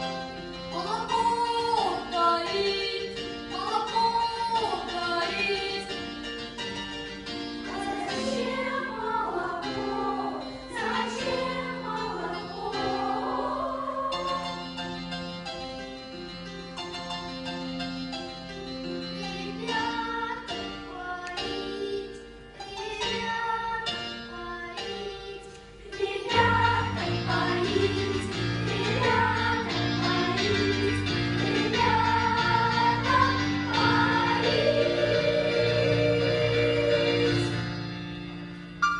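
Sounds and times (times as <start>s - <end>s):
children's choir singing: 0.0s - 6.1s, 7.6s - 15.1s, 19.2s - 37.8s
instrumental accompaniment: 0.0s - 38.9s.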